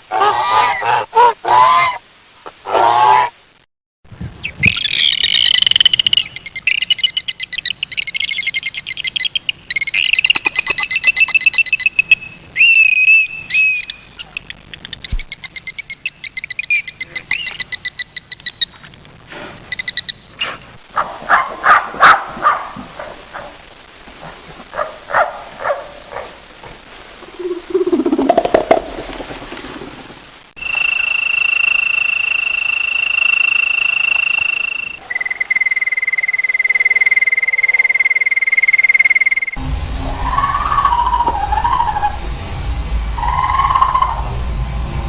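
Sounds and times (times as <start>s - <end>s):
animal high pulsed trill: 30.6s - 45.0s.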